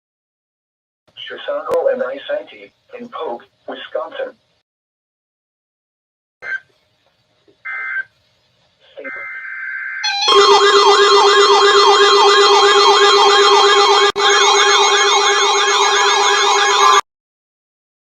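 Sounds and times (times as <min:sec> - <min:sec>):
sweeping siren alert tone: 0:09.0 - 0:17.0.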